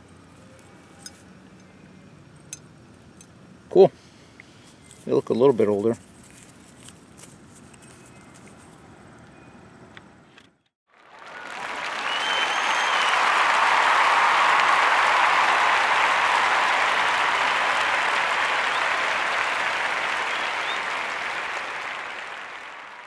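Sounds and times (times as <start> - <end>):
crowd applauding and cheering: 10.9 - 23.0
short high whistles: 11.2 - 22.8.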